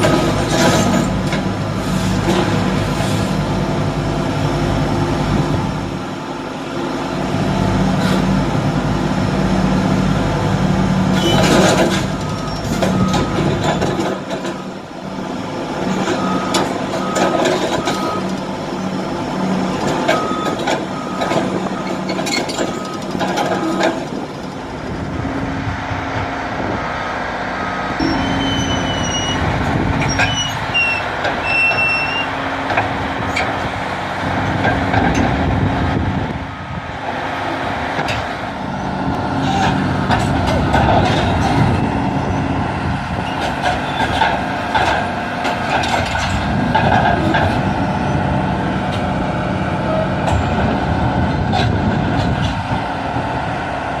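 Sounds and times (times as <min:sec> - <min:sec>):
diesel engine running: 0:00.0 - 0:54.0
backup alarm beeping: 0:27.6 - 0:29.4
short high squeals: 0:28.0 - 0:29.5, 0:30.1 - 0:32.4.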